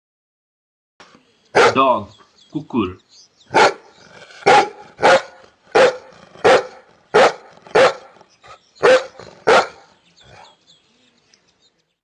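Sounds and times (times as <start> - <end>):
dog barking: 1.5 - 2.0, 3.5 - 8.2, 8.8 - 10.5.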